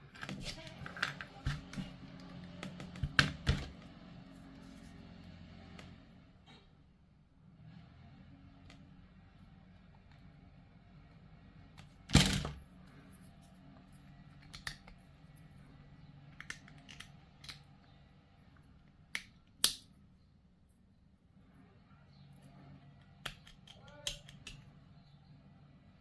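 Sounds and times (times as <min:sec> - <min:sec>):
plastic parts clicking: 0:14.3 - 0:15.0, 0:16.3 - 0:17.7.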